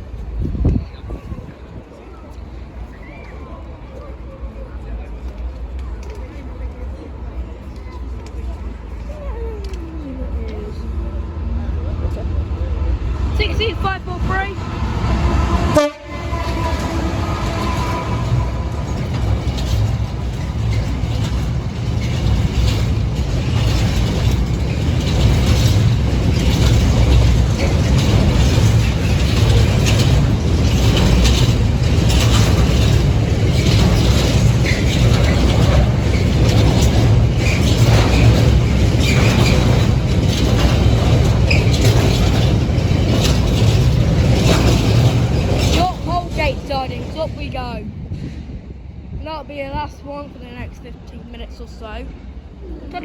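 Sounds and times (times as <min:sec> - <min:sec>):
diesel train rumbling: 0:00.0 - 0:53.0
wheels clacking over rail joints: 0:12.2 - 0:48.4.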